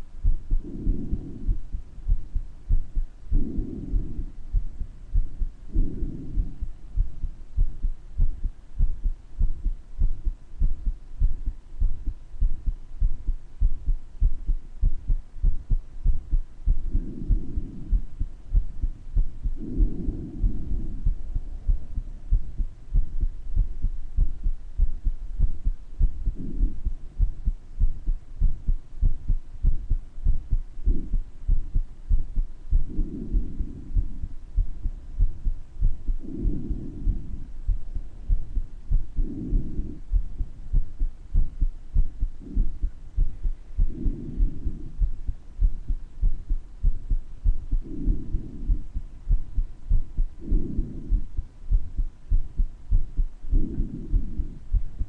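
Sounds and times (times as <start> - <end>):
heartbeat: 0.0 - 55.0
soft breathing: 0.0 - 55.0.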